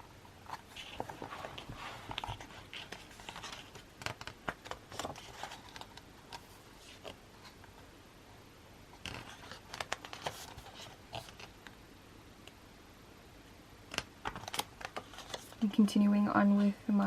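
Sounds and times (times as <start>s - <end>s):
paper and card rustling: 0.4s - 7.7s, 9.0s - 11.7s, 13.9s - 15.7s.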